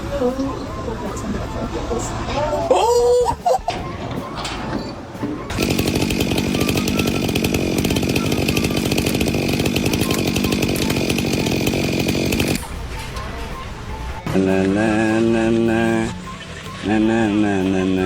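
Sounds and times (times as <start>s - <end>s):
power tool whining and chattering: 3.7s - 18.0s.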